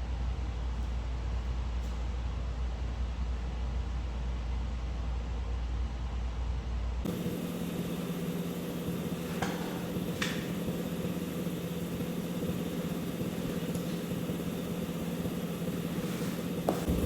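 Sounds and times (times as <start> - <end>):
pump humming: 7.1 - 17.0.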